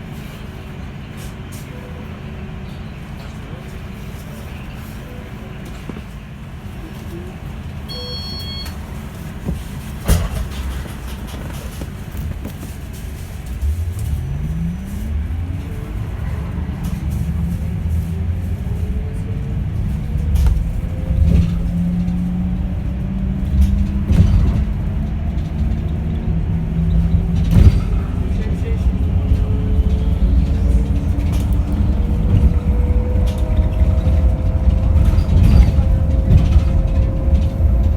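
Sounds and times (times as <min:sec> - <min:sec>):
high beep: 0:07.9 - 0:08.8
low rumble: 0:10.2 - 0:37.9.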